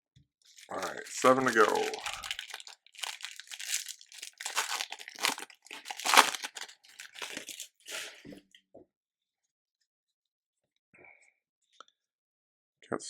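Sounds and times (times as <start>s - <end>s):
foil wrapper crinkling: 0.5s - 8.2s.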